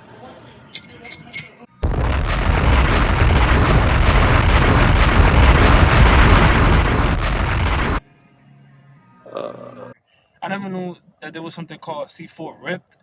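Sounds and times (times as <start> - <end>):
wind buffeting microphone: 1.8 - 8.0.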